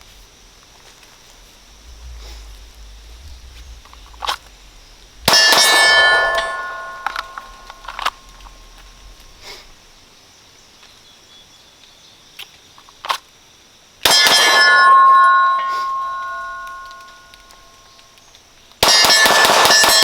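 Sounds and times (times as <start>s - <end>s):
steel target ringing: 5.2s - 9.2s, 14.1s - 17.8s
pistol shot: 18.8s - 20.0s.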